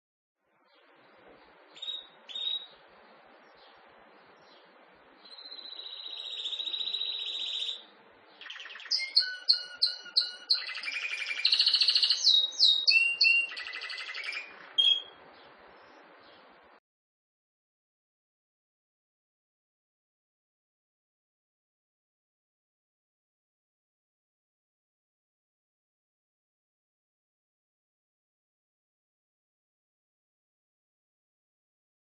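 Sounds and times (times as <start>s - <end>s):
canary singing and trilling: 1.7s - 2.8s, 4.4s - 16.5s.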